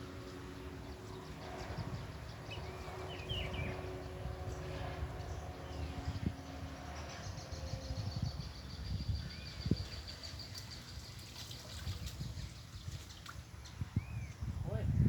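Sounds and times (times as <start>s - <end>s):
bird chirp: 0.2s - 14.5s
water sloshing and splashing: 10.3s - 13.8s.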